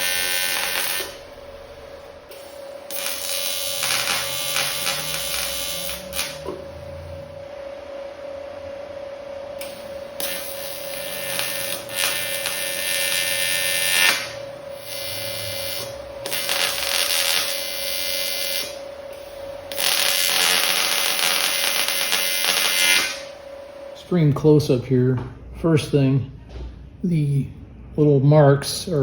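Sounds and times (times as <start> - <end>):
welding arc buzzing: 0.0 - 7.5, 9.6 - 24.0
faint steady hum: 0.0 - 29.0.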